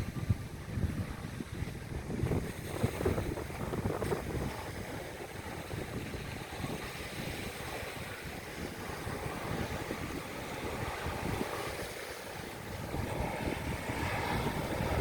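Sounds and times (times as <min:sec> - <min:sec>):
steady rushing noise: 0:00.0 - 0:15.0
wind buffeting microphone: 0:00.0 - 0:15.0.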